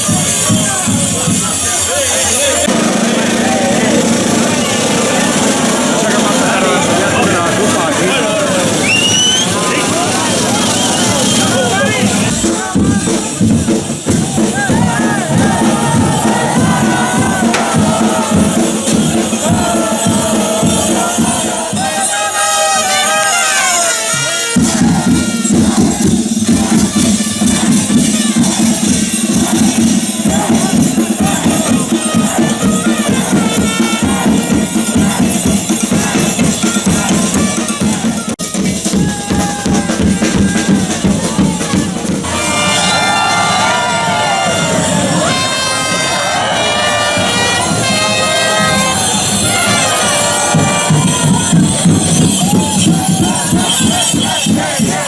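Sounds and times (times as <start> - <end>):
crowd noise: 0.0 - 55.0
loud music with fast percussion: 0.0 - 55.0
pulsing beat with shaker: 2.5 - 22.1, 24.6 - 45.4, 47.6 - 55.0.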